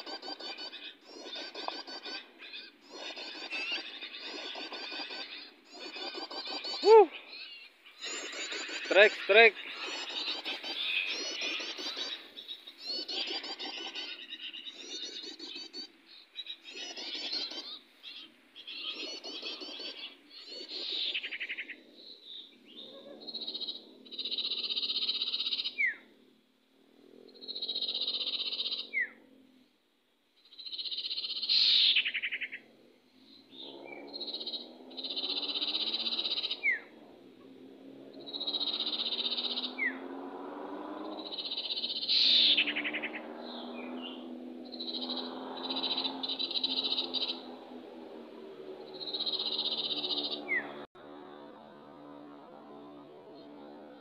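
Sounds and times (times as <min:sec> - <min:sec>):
small birds calling: 0:00.0 - 0:26.1, 0:27.0 - 0:29.7, 0:30.4 - 0:50.9.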